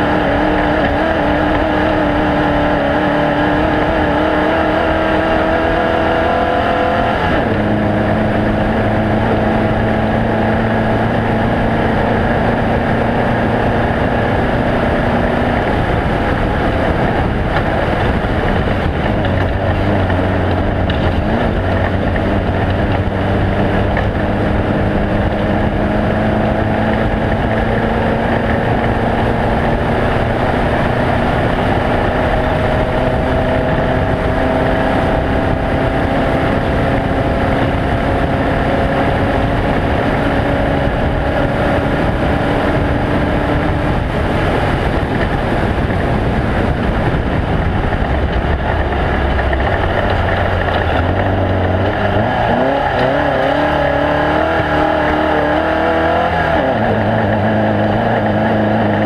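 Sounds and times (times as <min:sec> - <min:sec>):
off-road vehicle engine running hard: 0:00.0 - 0:59.0
wind and terrain noise: 0:00.0 - 0:59.0.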